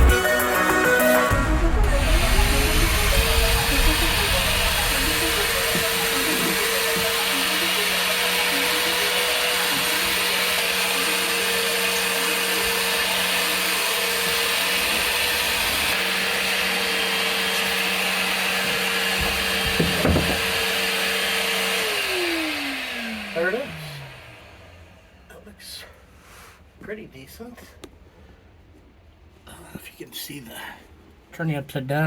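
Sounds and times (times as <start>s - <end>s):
cleaning tool motor whining: 0.0s - 25.2s
short knocks: 19.2s - 20.6s.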